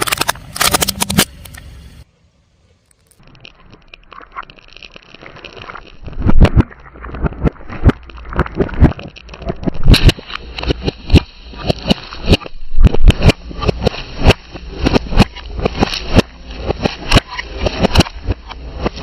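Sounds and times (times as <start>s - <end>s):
car tyre crushing brittle objects: 0.0s - 1.5s, 2.8s - 11.8s.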